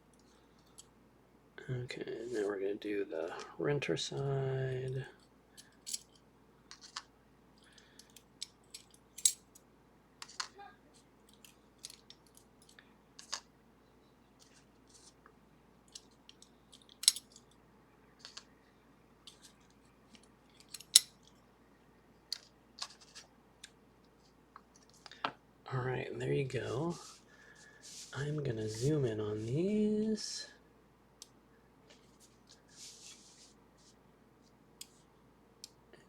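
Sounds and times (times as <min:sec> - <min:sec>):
lock parts clicking and clinking: 0:05.6 - 0:06.2, 0:08.0 - 0:09.6, 0:11.2 - 0:13.4, 0:15.9 - 0:17.6, 0:20.5 - 0:21.3.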